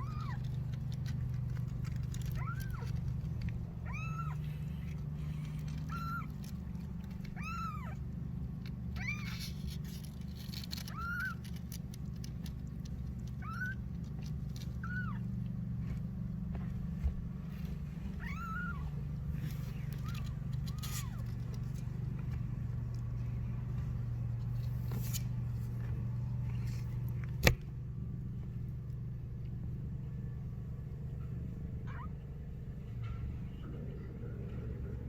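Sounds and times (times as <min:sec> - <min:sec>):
kitten meowing: 0:00.0 - 0:00.7, 0:02.1 - 0:03.0, 0:03.8 - 0:08.0, 0:08.9 - 0:09.6, 0:10.6 - 0:11.8, 0:13.3 - 0:13.9, 0:14.6 - 0:15.4, 0:18.1 - 0:21.3, 0:31.9 - 0:32.2.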